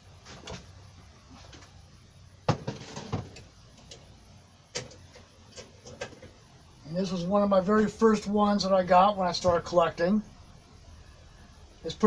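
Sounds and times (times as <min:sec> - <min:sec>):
metal lanterns clunking: 0:02.5 - 0:04.1, 0:04.7 - 0:06.4.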